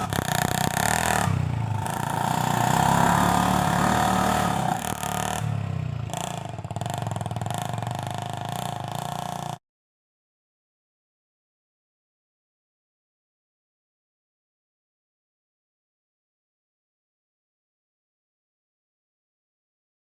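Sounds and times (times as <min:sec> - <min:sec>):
motorcycle engine revving: 0:00.0 - 0:09.6.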